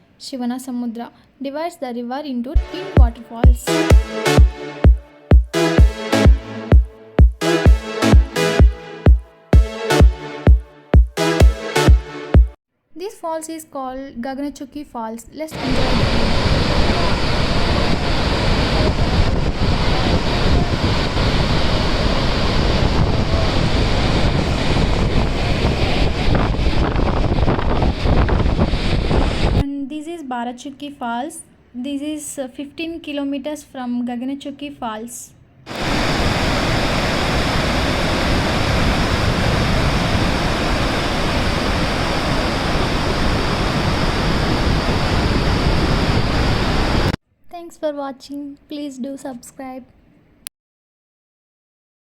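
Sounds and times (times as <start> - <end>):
wind buffeting microphone: 15.6 - 29.6, 35.8 - 47.2
waterfall rushing: 35.7 - 45.6.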